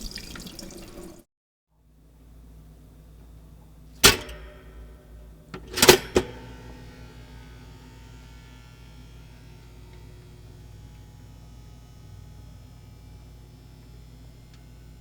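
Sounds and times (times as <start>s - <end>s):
kitchen appliance humming: 4.0s - 15.0s.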